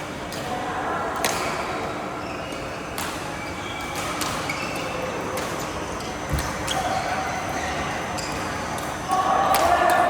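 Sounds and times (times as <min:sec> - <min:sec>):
sneaker squeaks on court floor: 0:02.2 - 0:05.2, 0:06.0 - 0:08.6.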